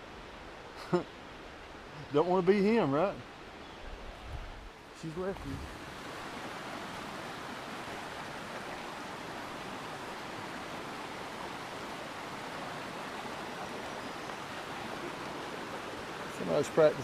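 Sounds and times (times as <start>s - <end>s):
waterfall rushing: 5.0s - 17.0s.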